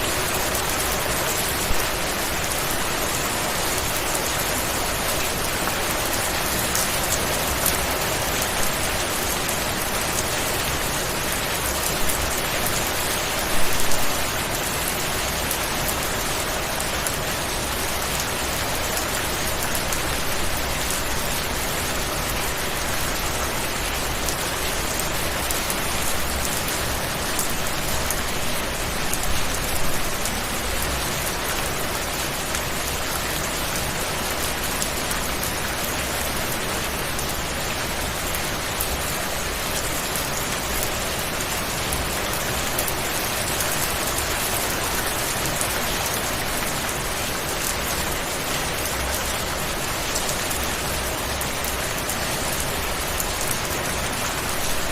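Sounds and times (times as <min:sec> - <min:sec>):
steady rain falling: 0:00.0 - 0:54.9.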